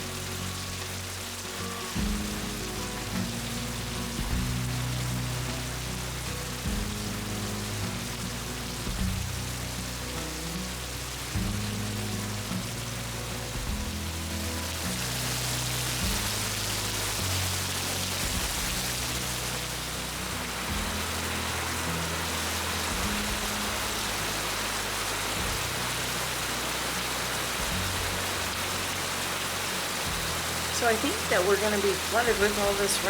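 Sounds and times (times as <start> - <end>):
heavy rain falling: 0.0 - 33.0
music of low sustained chords: 0.0 - 33.0.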